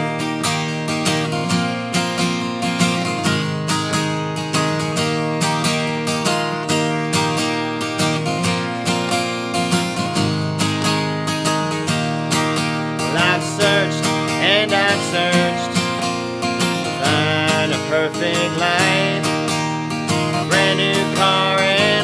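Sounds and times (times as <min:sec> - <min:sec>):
acoustic guitar strumming: 0:00.0 - 0:22.0.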